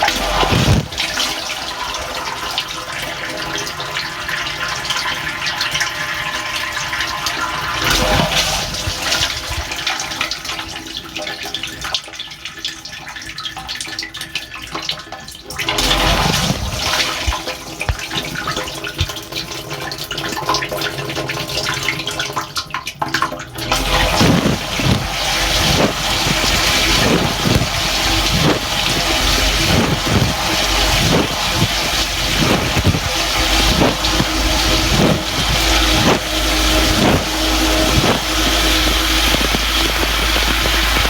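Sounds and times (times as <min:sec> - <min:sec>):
steady hum: 0:00.0 - 0:02.4, 0:23.7 - 0:41.0
water spraying in dishwasher: 0:00.0 - 0:10.4, 0:15.7 - 0:19.2, 0:23.6 - 0:41.0.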